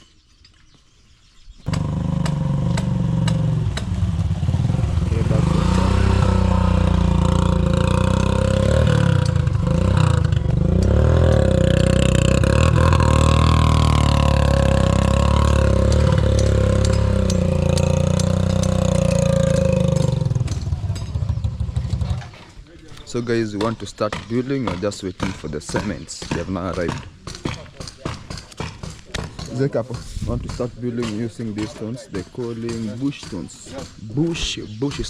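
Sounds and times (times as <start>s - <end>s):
loud engine running: 1.7s - 22.0s.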